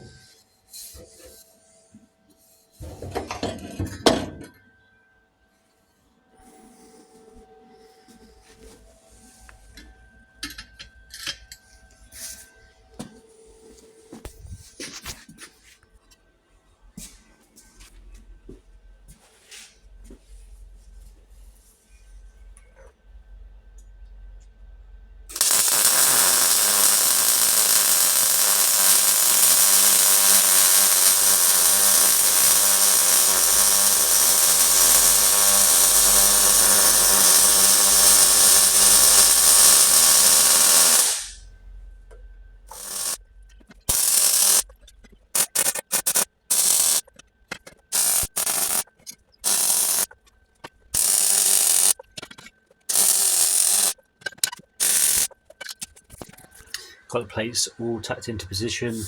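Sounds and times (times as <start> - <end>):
power tool cutting steel: 25.3 - 41.4, 42.7 - 43.2, 43.9 - 44.7, 45.4 - 47.0, 47.9 - 48.8, 49.4 - 50.1, 51.0 - 52.0, 52.9 - 54.0, 54.8 - 55.3.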